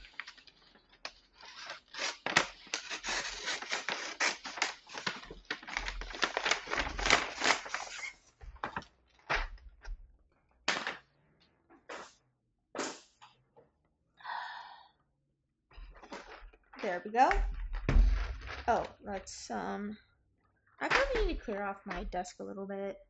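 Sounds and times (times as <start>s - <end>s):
cardboard box being torn open: 1.4s - 8.0s.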